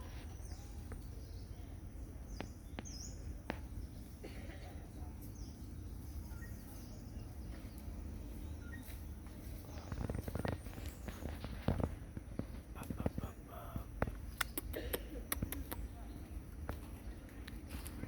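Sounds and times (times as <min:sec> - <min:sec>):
low background noise: 0:00.0 - 0:18.0
sharp clicks: 0:14.0 - 0:15.9.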